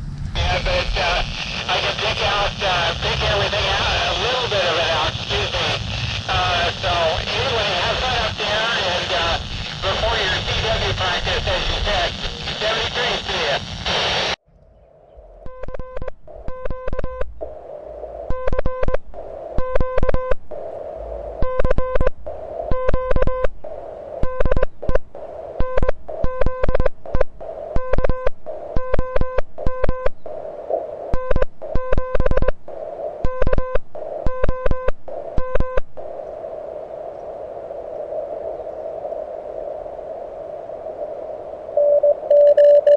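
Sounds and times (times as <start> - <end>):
receiver hiss: 0.4 - 14.4, 15.4 - 42.6
morse code tone: 15.5 - 36.2, 41.8 - 42.9.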